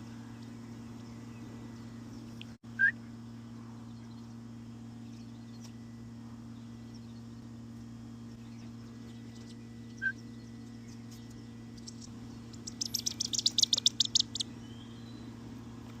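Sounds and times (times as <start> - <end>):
steady low hum: 0.0 - 16.0
bird chips: 8.4 - 15.1.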